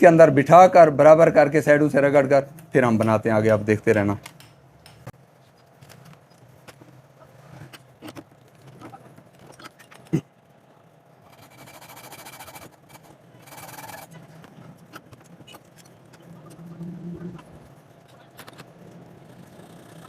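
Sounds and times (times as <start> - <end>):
scraping or rubbing: 11.2 - 17.6.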